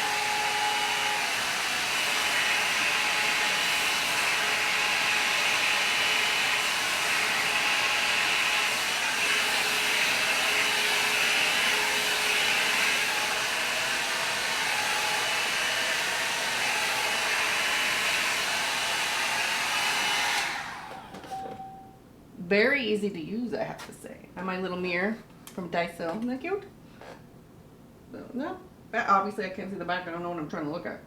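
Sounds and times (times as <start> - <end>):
hair dryer blowing air: 0.0 - 21.7.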